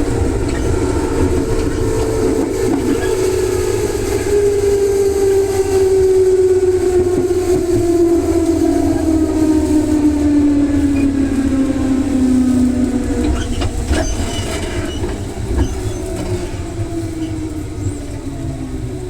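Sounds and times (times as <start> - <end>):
wheel clacks over rail joints: 0.0 - 4.6, 10.9 - 18.4
traction motors whining: 0.0 - 19.0
wheels rumbling on rail: 0.0 - 19.0.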